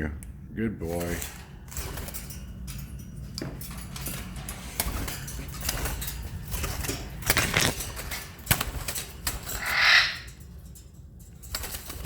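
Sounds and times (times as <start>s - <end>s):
rustling: 1.0s - 9.6s
wing flaps: 4.2s - 9.7s
parrot squawk: 9.5s - 10.3s.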